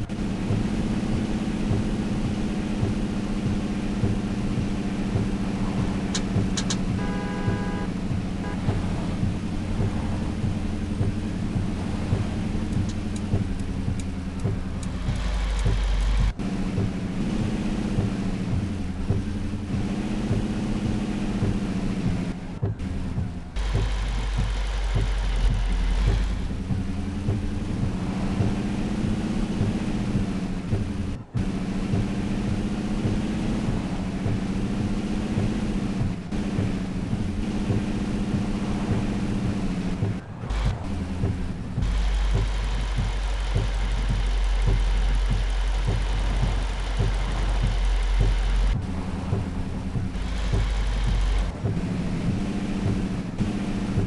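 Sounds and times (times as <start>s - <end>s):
deep rumble: 0.0s - 54.0s
road noise: 0.0s - 54.0s
truck engine hum: 0.0s - 54.0s
light regular knocks: 21.4s - 54.0s.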